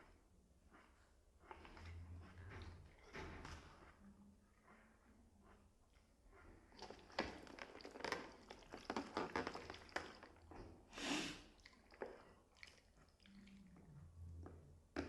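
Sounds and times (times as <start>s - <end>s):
food squishing and crackling: 6.6s - 10.8s, 11.4s - 15.0s.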